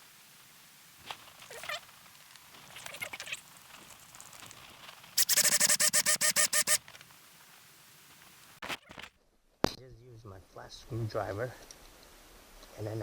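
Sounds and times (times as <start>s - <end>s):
drill bit squeaking on metal: 5.2s - 6.8s.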